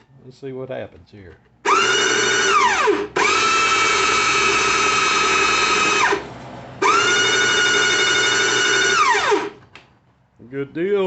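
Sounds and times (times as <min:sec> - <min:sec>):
electric motor whining: 0:01.7 - 0:09.6.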